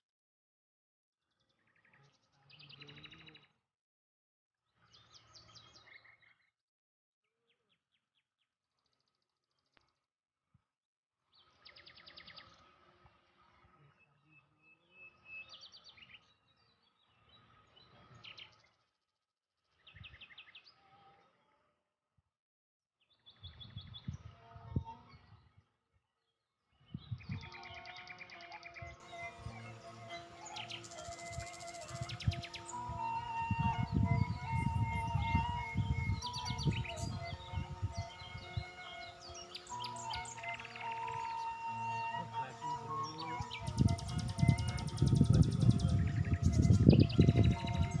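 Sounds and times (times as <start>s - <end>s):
birds chirping: 27.0s - 48.0s.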